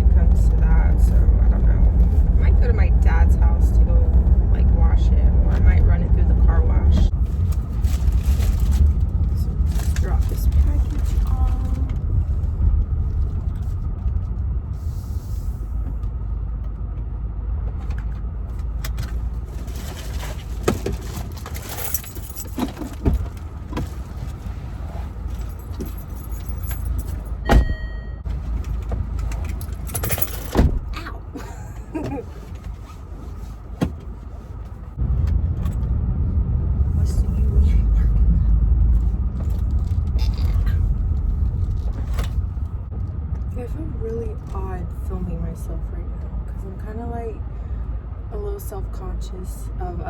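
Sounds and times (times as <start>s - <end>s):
car engine and road rumble: 0.0s - 50.0s
keys jangling: 21.4s - 23.3s, 25.3s - 27.6s, 29.2s - 30.7s.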